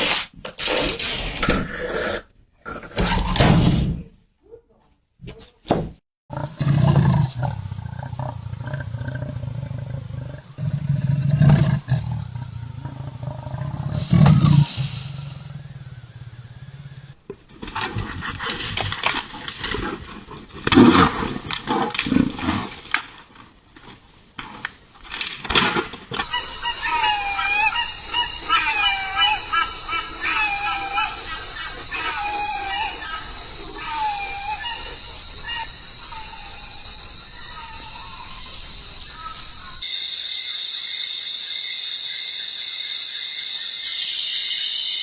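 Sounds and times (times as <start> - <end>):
animal roaring: 6.3 - 17.2.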